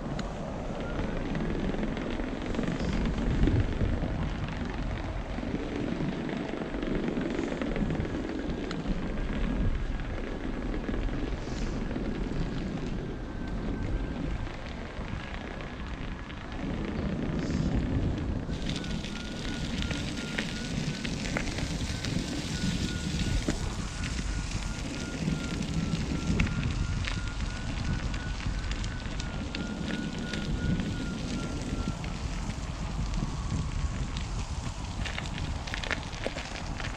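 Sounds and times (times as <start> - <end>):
wind buffeting microphone: 0.0 - 36.9
faint high whine: 18.4 - 36.9.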